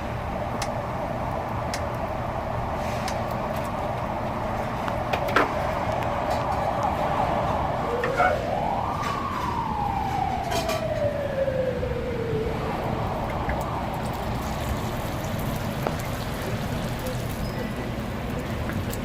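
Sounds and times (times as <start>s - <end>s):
street noise: 0.0s - 19.0s
siren wailing: 6.0s - 16.0s.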